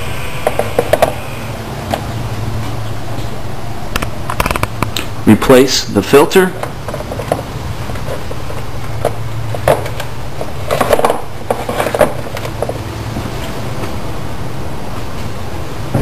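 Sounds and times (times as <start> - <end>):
steady low hum: 0.0 - 16.0
plastic air box knocks and rustles: 6.6 - 12.8.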